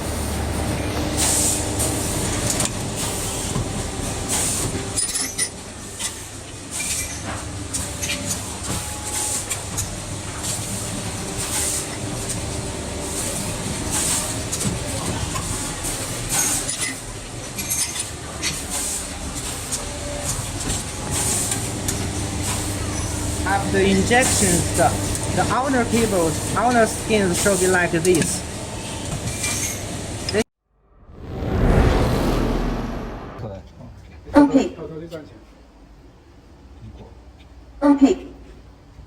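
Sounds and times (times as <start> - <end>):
machine hisses and clacks: 1.0 - 28.4.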